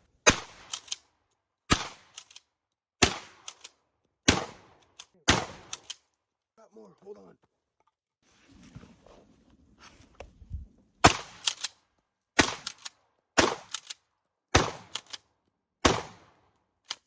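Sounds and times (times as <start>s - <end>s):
shotgun shots: 0.2s - 0.9s, 1.7s - 2.2s, 3.0s - 3.6s, 4.2s - 5.9s, 11.0s - 11.6s, 12.4s - 12.8s, 13.4s - 13.8s, 14.5s - 15.1s, 15.8s - 16.4s
shotgun pump clacks: 0.6s - 1.0s, 11.4s - 11.8s, 12.4s - 14.0s, 14.8s - 15.2s
gun handling clicks: 0.6s - 1.4s, 2.0s - 2.5s, 3.4s - 3.8s, 4.8s - 6.2s, 11.3s - 11.8s, 12.4s - 13.0s, 13.6s - 14.0s, 14.9s - 15.3s.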